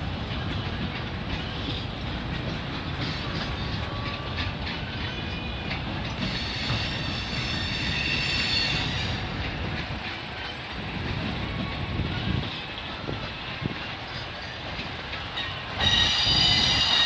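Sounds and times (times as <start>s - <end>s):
train wheels clacking over rail joints: 0.4s - 10.5s
high-pitched wheel squeal: 15.8s - 17.0s.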